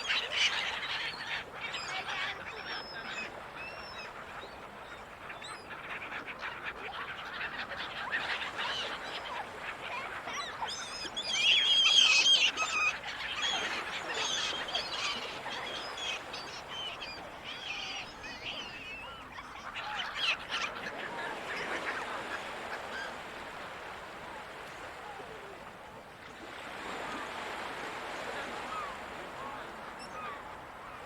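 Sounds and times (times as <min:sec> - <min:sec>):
gulls squawking: 0:07.2 - 0:23.7
surf washing: 0:08.3 - 0:31.0.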